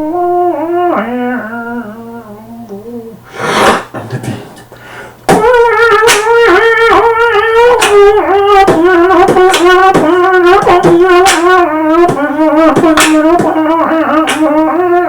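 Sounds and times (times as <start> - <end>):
beatboxing horn-like vocal tone: 2.3 - 4.7, 5.3 - 15.0
percussive mouth hits: 3.3 - 4.7, 5.3 - 7.0, 7.7 - 15.0.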